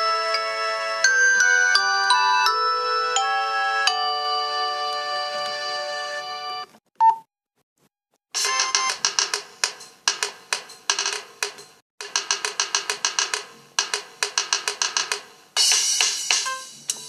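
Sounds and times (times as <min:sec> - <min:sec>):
phone ringtone melody: 0:00.0 - 0:06.6, 0:08.4 - 0:09.0.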